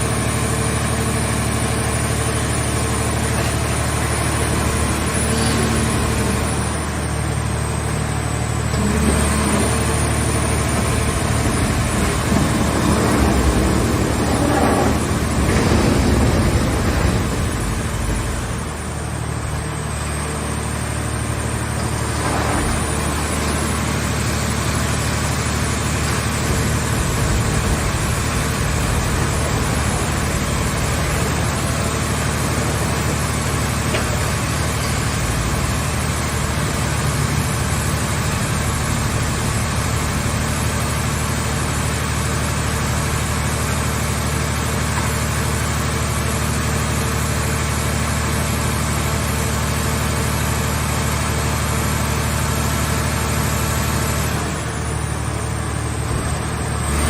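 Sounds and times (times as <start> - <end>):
baler machine engine humming: 1.8 - 40.0.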